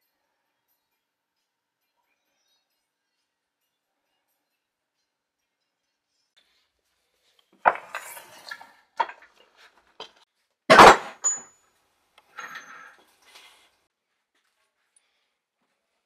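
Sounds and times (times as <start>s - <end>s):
high metallic ring: 11.2s - 11.7s.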